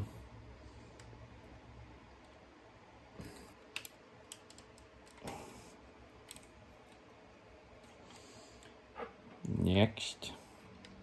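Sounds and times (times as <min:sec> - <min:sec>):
plastic parts clicking together: 0:03.7 - 0:05.3.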